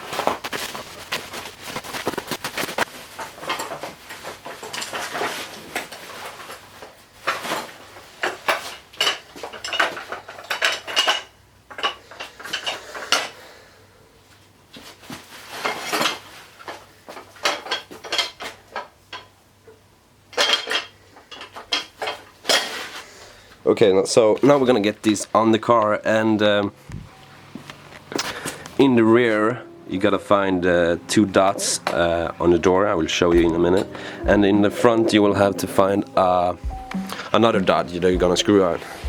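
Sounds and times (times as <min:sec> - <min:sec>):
metal parts clinking and rattling: 0:08.3 - 0:13.3.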